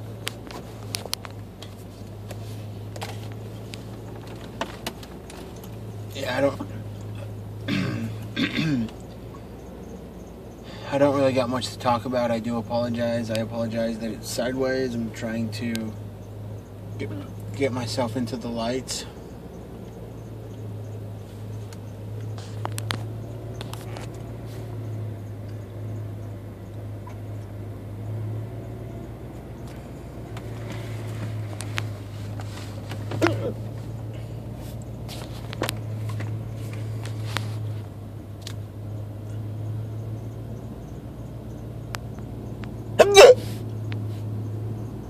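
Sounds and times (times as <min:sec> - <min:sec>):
steady low hum: 0:00.0 - 0:45.0
man hiccuping: 0:07.1 - 0:09.0, 0:17.1 - 0:17.4, 0:33.1 - 0:33.7, 0:43.0 - 0:43.4.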